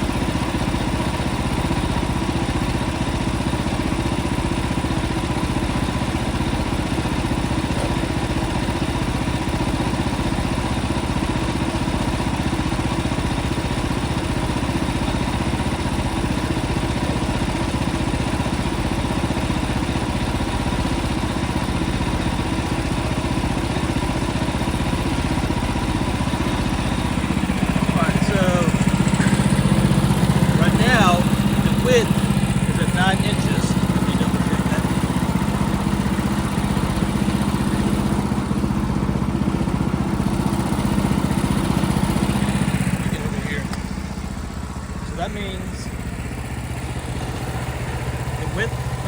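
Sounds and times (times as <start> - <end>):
sawmill engine running: 0.0 - 49.0.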